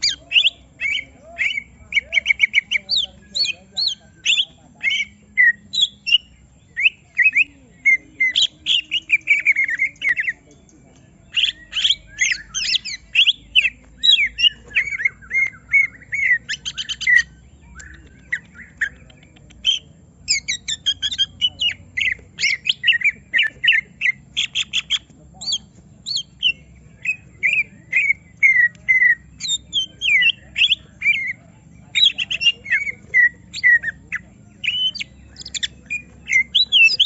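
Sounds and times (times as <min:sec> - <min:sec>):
bird singing sliding whistles: 0:11.3 - 0:37.0.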